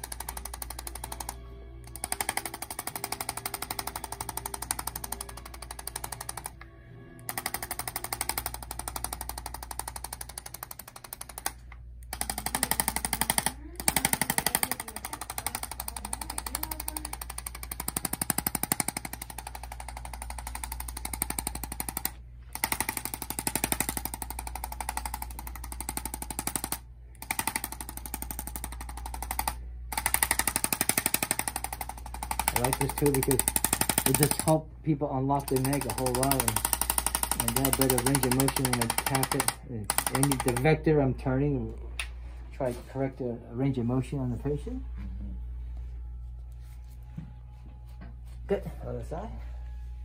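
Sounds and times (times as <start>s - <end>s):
adjusting tool tapping rapidly: 0.0s - 6.6s, 7.3s - 34.6s, 35.4s - 40.7s.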